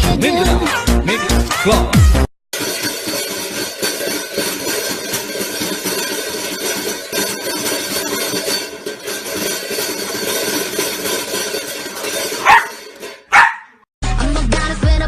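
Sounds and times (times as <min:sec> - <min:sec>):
dog barking: 0:12.4 - 0:13.8.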